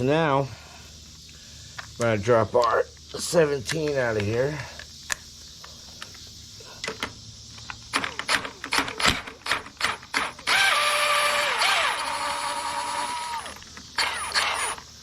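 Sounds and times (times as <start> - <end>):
power impact gun whine: 8.0 - 14.9.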